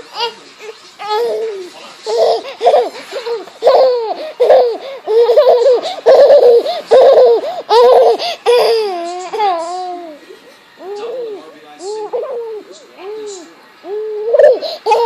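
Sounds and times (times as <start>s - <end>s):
baby laughing: 0.1s - 10.2s, 10.8s - 15.0s.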